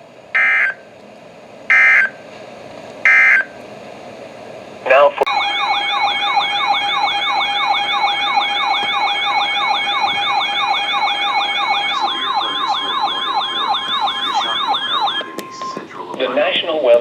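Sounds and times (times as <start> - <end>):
electronic yelp siren: 0.4 - 0.8, 1.7 - 2.2, 3.0 - 3.6, 5.3 - 15.8
steady alert tones: 5.3 - 15.8.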